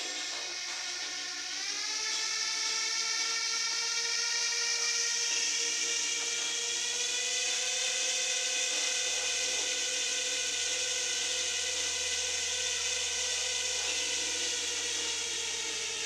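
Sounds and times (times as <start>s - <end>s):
remote-control helicopter whirring: 0.0s - 16.0s.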